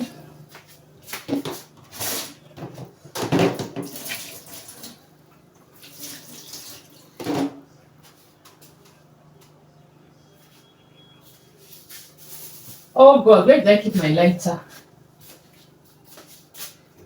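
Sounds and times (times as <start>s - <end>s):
hands rinsed with water at sink: 3.6s - 5.0s.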